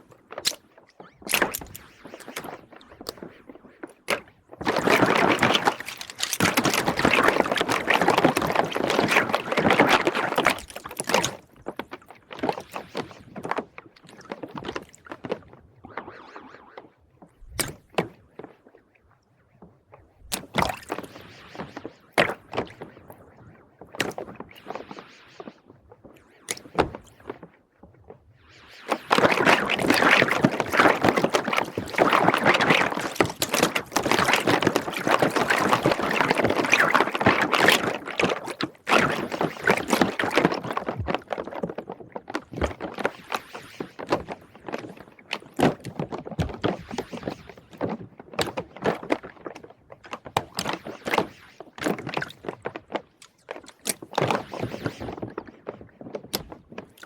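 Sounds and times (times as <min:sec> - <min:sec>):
plastic rings clattering in water: 0:04.7 - 0:11.3.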